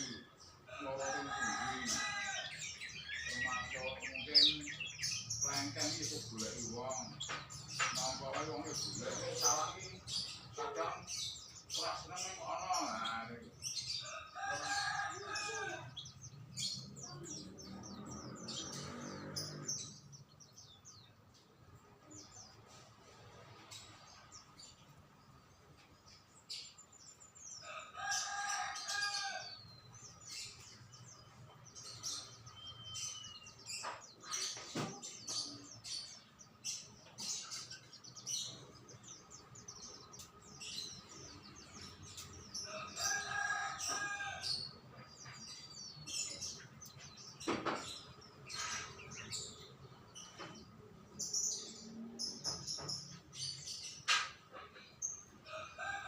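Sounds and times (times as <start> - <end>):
small birds chirping: 0.0 - 56.0
rooster crowing: 0.8 - 4.1, 14.0 - 16.0, 27.6 - 29.7, 42.6 - 44.6.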